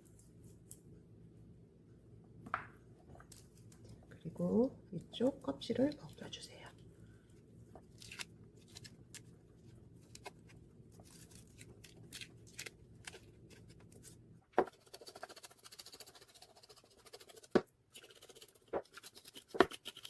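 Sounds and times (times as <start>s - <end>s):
faint low hum: 0.0s - 19.4s
root skin scraping and peeling: 7.9s - 9.4s.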